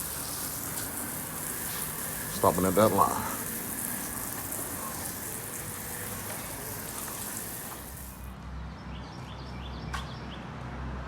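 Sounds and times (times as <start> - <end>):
spray hissing on concrete: 0.0 - 8.3.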